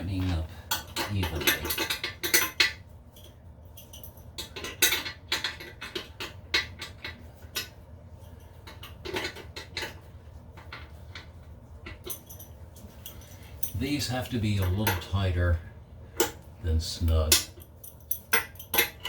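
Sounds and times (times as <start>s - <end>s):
metal tool clicking on nuts: 17.1s - 19.0s.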